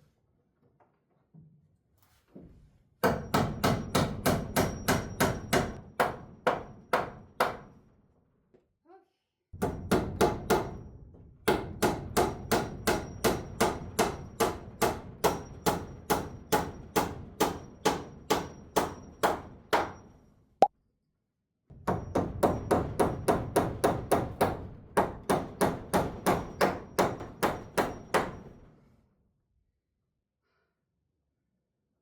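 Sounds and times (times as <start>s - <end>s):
hammer driving nails into wood: 3.0s - 7.8s.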